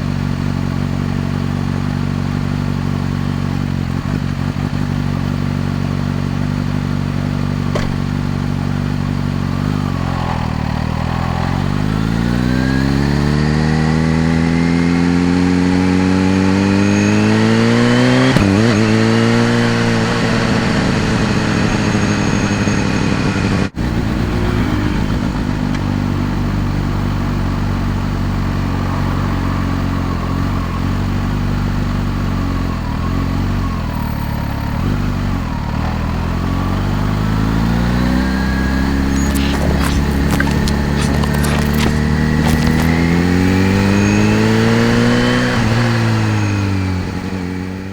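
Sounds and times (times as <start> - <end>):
motorcycle engine revving: 0.1 - 22.5, 34.8 - 47.9
gear change: 37.9 - 45.9.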